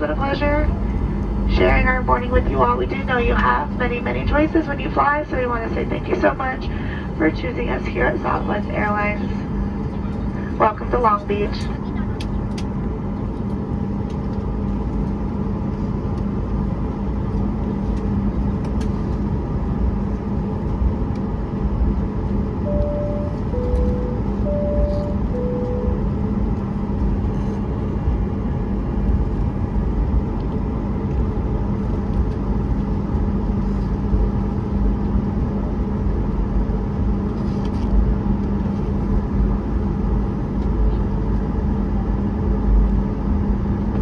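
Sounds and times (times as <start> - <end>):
airplane cabin drone: 0.0 - 44.0
cabin chime ding-dong: 22.7 - 26.1.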